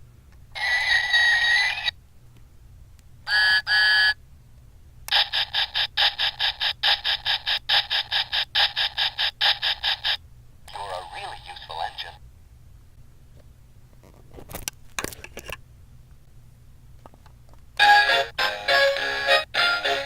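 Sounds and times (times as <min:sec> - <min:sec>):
toy train toots: 0:00.6 - 0:01.9, 0:03.3 - 0:04.2.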